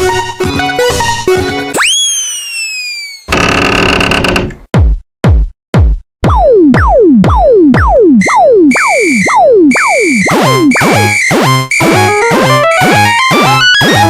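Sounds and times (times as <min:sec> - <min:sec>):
layered stepped electronic notes: 0:06.2 - 0:14.0
high electronic beeps: 0:08.2 - 0:14.0.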